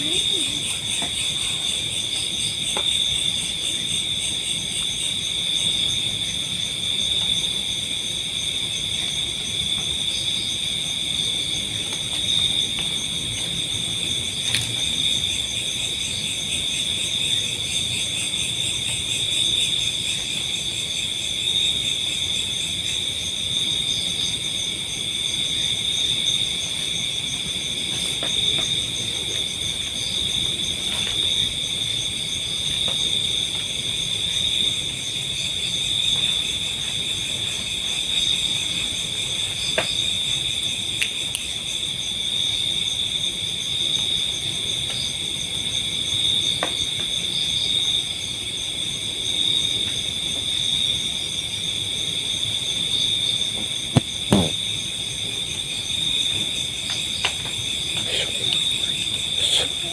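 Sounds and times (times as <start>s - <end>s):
crickets chirring: 0.0s - 59.9s.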